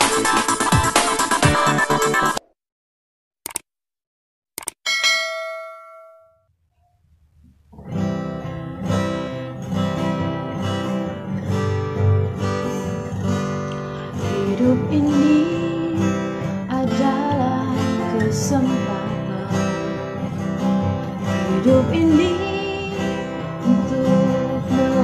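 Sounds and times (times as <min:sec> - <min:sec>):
strummed acoustic guitar: 0:07.7 - 0:25.0
person singing: 0:14.0 - 0:19.9, 0:21.3 - 0:25.0.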